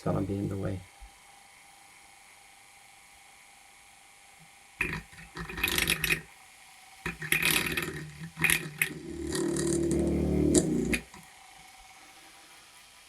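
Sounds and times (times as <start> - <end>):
small electric drill running: 3.5 - 12.6
scraping and rubbing: 4.8 - 6.3, 7.1 - 11.3.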